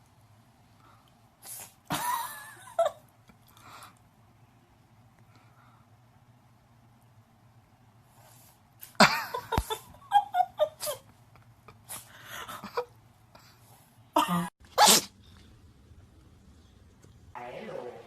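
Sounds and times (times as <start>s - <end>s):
cat sneezing: 1.4s - 2.0s, 10.8s - 11.1s, 14.7s - 15.2s.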